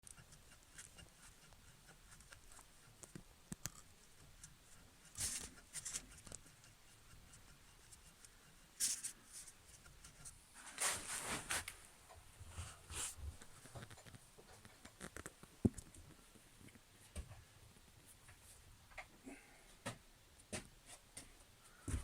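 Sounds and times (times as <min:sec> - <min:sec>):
faint rustling and scraping: 0:00.0 - 0:19.8.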